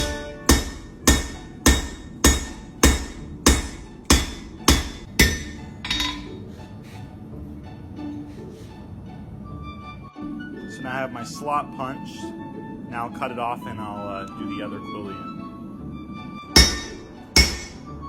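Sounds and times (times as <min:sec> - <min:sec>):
hammer striking steel punch: 0:00.0 - 0:06.4, 0:16.6 - 0:18.0.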